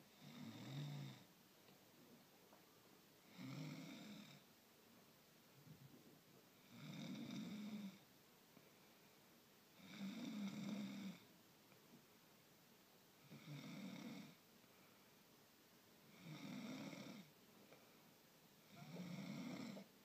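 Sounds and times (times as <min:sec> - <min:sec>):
person snoring: 0:00.1 - 0:01.2, 0:03.3 - 0:04.4, 0:06.6 - 0:08.0, 0:09.8 - 0:11.2, 0:16.1 - 0:17.3, 0:18.6 - 0:19.9.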